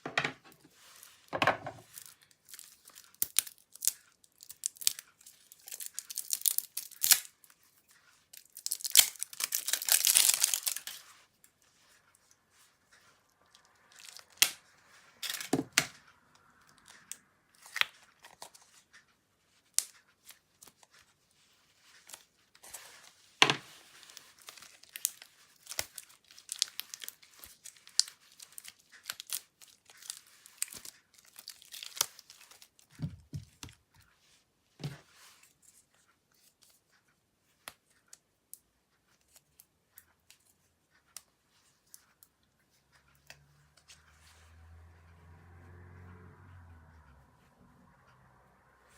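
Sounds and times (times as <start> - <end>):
slime popping and crackling: 2.5 - 7.2, 8.4 - 11.0.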